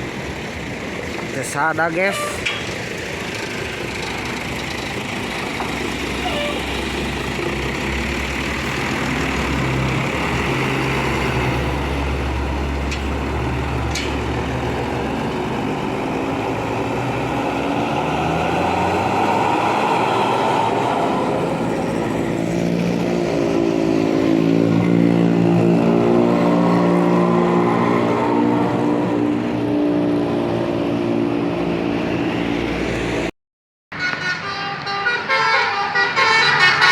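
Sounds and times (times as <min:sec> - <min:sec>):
bus engine running: 0:00.0 - 0:33.3
bus horn playing a tune: 0:02.0 - 0:02.7, 0:06.1 - 0:07.0, 0:34.0 - 0:36.9.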